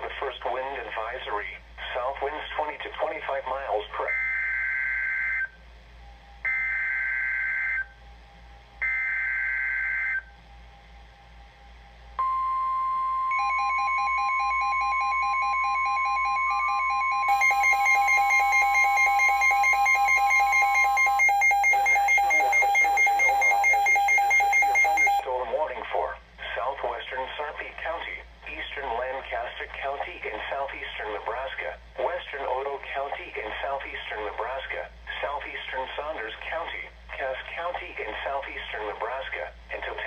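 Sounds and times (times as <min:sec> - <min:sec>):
pulsing electronic alarm beeping: 0:12.2 - 0:25.2
steady warning alarm tone: 0:12.2 - 0:25.3
digital data warble: 0:13.3 - 0:25.2.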